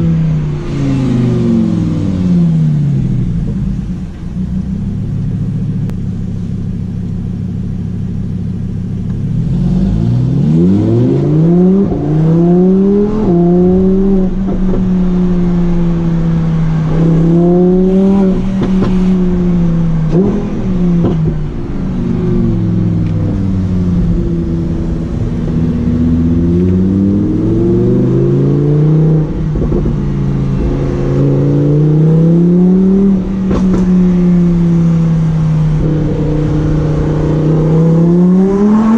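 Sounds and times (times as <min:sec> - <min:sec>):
sports car engine revving: 0:00.0 - 0:38.9
exhaust pops: 0:33.1 - 0:37.4.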